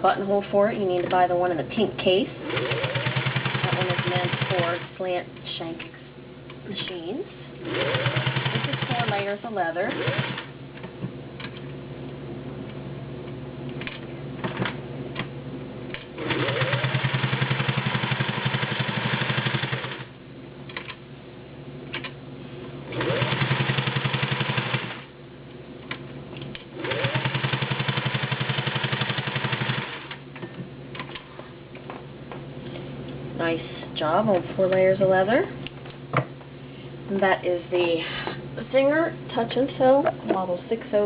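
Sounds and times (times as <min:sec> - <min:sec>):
sewing machine stitching leather: 0:02.5 - 0:04.9, 0:07.7 - 0:09.3, 0:09.9 - 0:10.5, 0:16.2 - 0:20.1, 0:22.9 - 0:25.1, 0:26.8 - 0:30.2.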